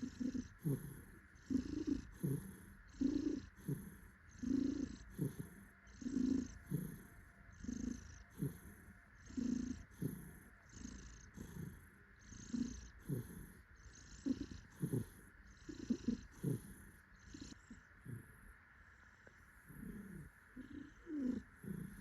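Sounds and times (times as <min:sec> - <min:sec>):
cat purring: 0:00.0 - 0:22.0.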